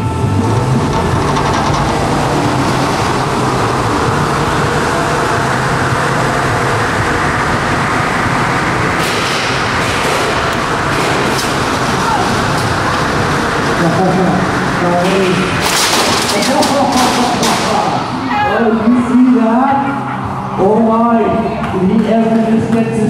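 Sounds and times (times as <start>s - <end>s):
metal impacts clanking: 0.1s - 18.2s.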